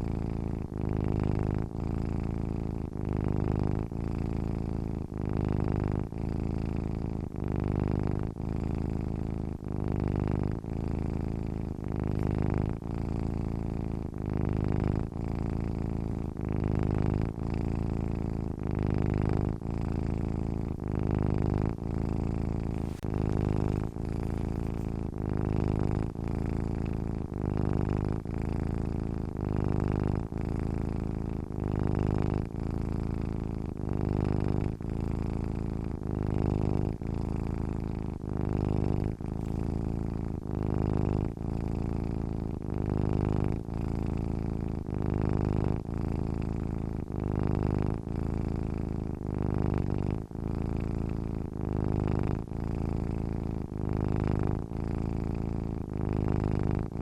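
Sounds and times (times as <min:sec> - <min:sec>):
cat purring: 0:00.0 - 0:57.0.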